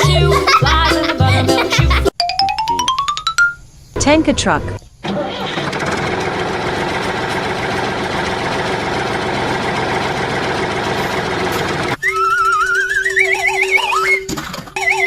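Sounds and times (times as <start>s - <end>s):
truck engine idling: 5.0s - 12.0s.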